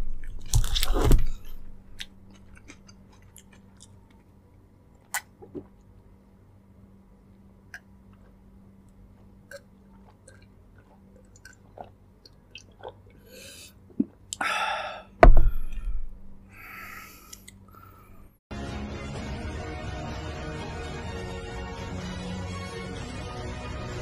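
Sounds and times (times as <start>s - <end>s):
close chewing and mouth clicks: 0.2s - 4.3s, 7.7s - 14.4s
heavy thump: 15.2s - 16.4s.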